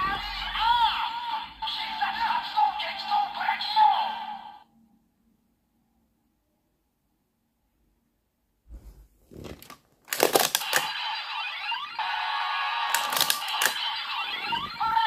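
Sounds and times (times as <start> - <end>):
plastic toy clicks: 9.6 - 11.0, 12.9 - 13.9
toy belt electronic sound effects: 10.1 - 15.0.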